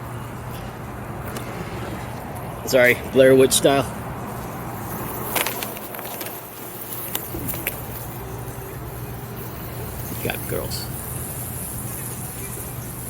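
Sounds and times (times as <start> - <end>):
bees buzzing: 4.2 - 13.0.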